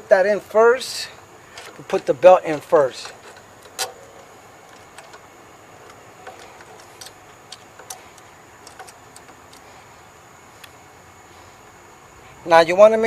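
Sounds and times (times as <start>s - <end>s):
hand tools clicking and tapping: 1.1s - 9.7s.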